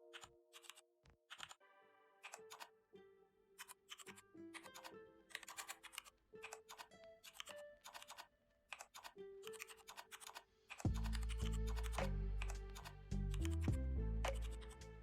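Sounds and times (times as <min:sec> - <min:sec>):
keyboard typing: 0:00.0 - 0:01.6, 0:02.2 - 0:02.7, 0:03.6 - 0:13.7, 0:14.3 - 0:14.8
background music with bass: 0:10.9 - 0:15.0.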